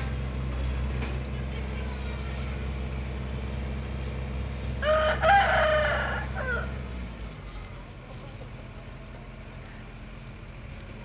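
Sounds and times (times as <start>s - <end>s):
low engine hum: 0.0s - 11.0s
rooster crowing: 4.8s - 7.0s.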